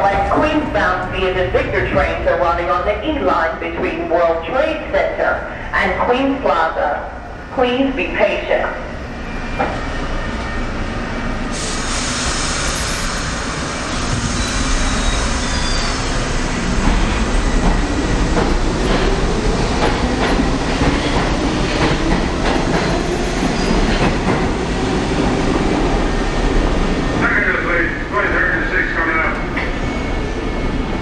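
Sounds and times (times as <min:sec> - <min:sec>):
high wheel squeals: 0:14.2 - 0:16.2.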